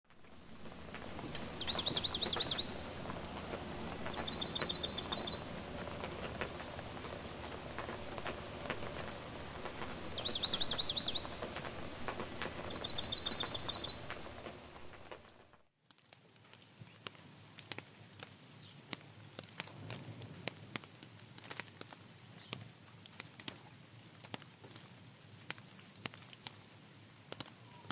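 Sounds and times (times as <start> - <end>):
songbird singing: 0.1 - 15.3
background hiss with light ticks: 0.1 - 27.9.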